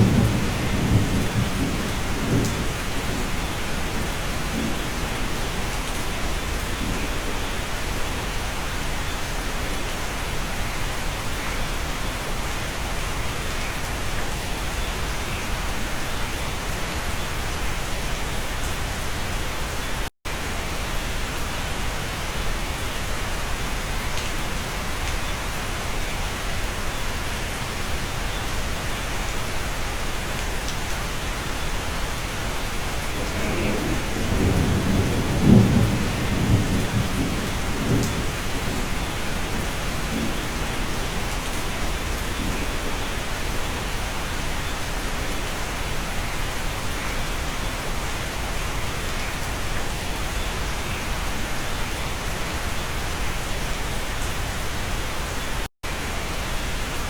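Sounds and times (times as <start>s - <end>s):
thunder rumbling: 0.0s - 7.6s, 32.7s - 44.4s
steady rain: 0.0s - 57.0s.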